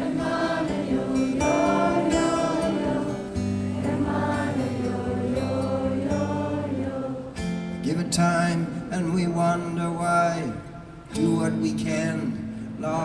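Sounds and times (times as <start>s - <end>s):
voices singing: 0.0s - 9.1s
guitar: 0.0s - 13.0s.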